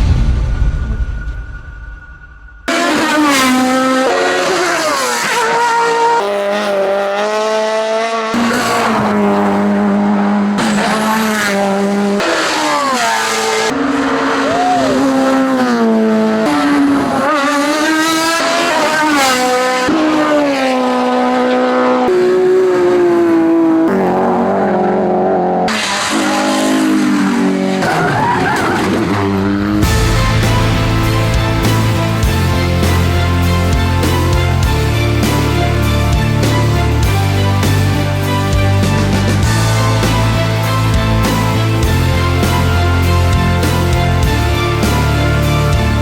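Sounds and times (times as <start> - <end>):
racing car engines revving: 2.7 - 46.0.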